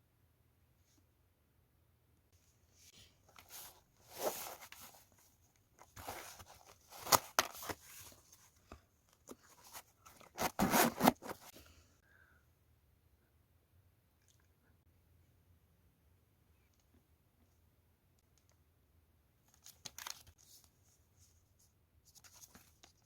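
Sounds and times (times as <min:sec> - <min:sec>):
packaging rustling and tearing: 0:05.8 - 0:08.1, 0:09.7 - 0:11.5.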